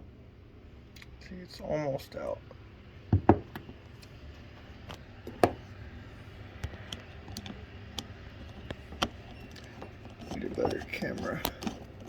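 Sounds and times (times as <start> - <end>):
screwdriver clicking on metal: 7.3 - 12.0.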